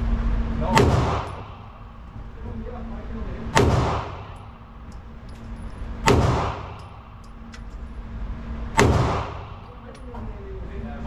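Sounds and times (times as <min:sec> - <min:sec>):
handgun shots: 0:00.7 - 0:01.6, 0:03.6 - 0:04.5, 0:06.0 - 0:07.1, 0:08.8 - 0:09.7.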